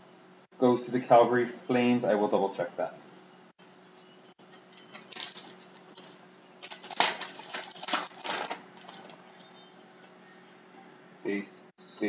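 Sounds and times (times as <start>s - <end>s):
trading cards clicking and rustling: 4.5s - 9.2s.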